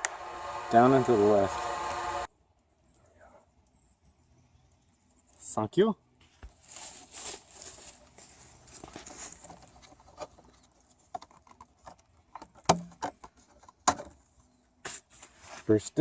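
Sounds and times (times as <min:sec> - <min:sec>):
handling rustling: 0:06.3 - 0:12.1.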